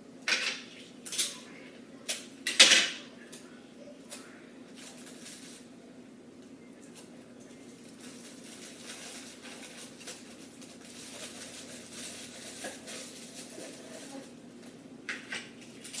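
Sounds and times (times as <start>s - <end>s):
foil blanket crinkling: 7.7s - 14.4s.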